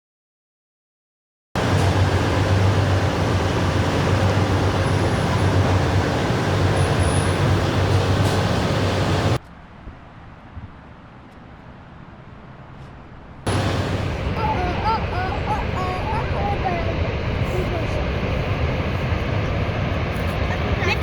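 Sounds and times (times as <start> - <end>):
waterfall roaring: 1.6 - 9.4, 13.5 - 21.0.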